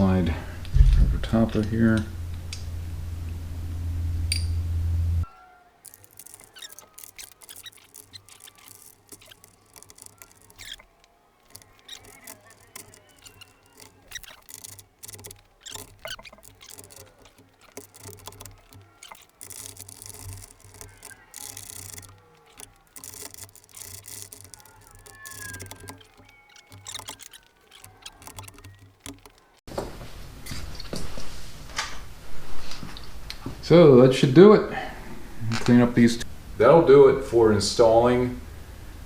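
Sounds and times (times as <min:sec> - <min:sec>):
faint short squeaks: 0:05.2 - 0:29.6
hand tools and metal parts clinking: 0:05.9 - 0:29.6.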